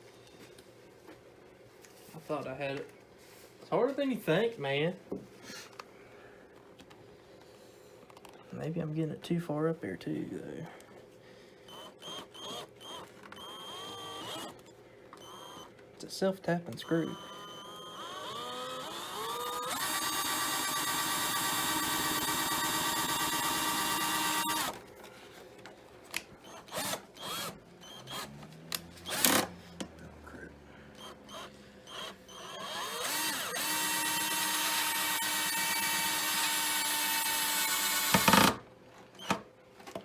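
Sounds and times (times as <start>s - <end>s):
power drill driving a screw: 11.7s - 14.6s, 15.2s - 15.7s, 16.9s - 24.8s, 26.4s - 29.6s, 31.0s - 38.6s.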